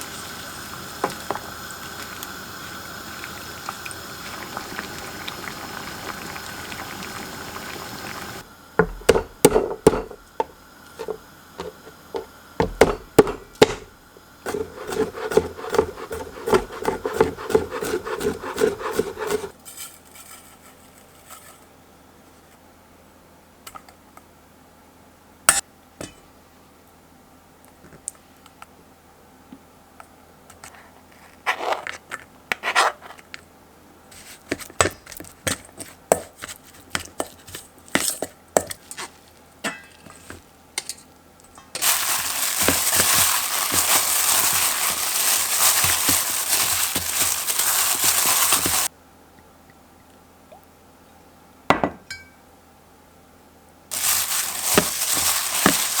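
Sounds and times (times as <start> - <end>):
dishes and utensils clinking: 38.0 - 41.0
kitchen tap running: 41.8 - 48.9.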